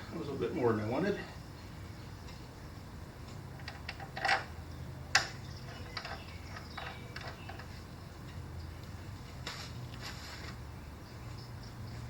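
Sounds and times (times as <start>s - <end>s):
metal rattle: 3.6s - 7.7s.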